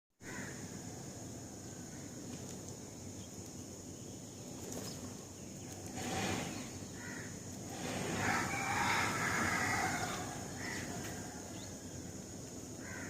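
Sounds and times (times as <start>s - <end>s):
sparrows chirping: 0.3s - 13.0s.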